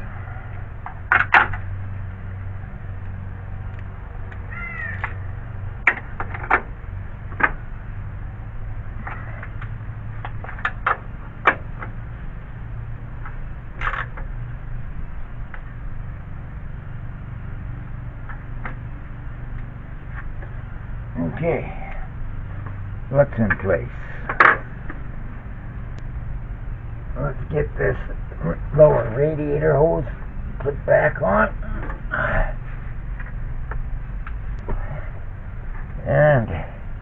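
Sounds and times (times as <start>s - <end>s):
steady low hum: 0.0s - 37.0s
animal call: 4.5s - 5.1s.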